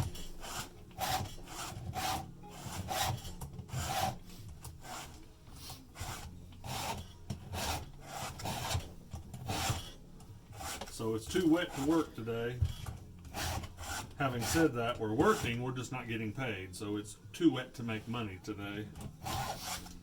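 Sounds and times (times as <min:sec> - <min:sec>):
file rasping on saw chain: 0:00.0 - 0:15.6, 0:19.0 - 0:20.0.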